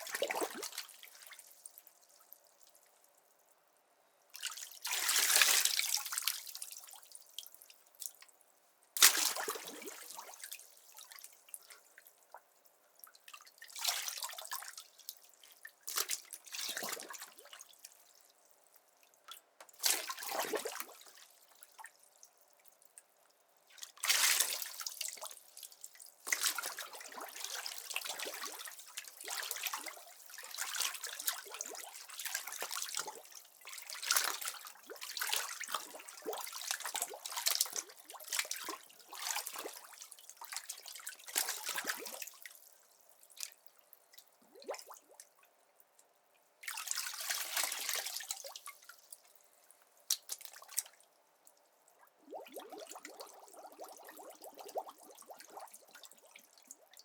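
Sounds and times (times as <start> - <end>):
water dripping and trickling: 46.8 - 57.0.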